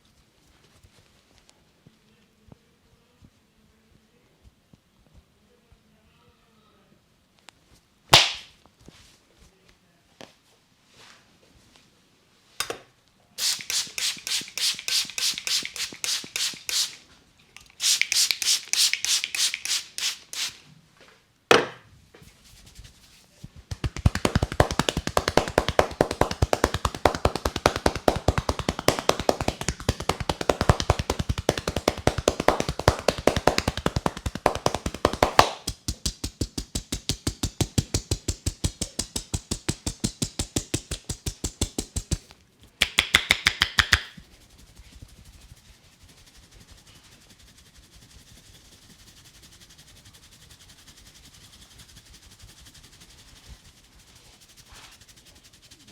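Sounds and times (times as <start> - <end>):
hands tapping and slapping a head: 8.1 - 8.5, 13.4 - 17.0, 17.6 - 20.5, 23.6 - 44.2
sharp crack: 8.1 - 8.5.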